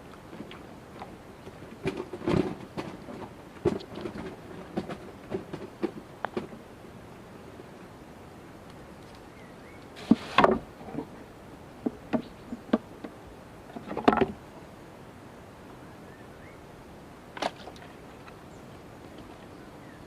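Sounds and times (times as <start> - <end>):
irregular knocks and clatters: 1.7 - 6.6.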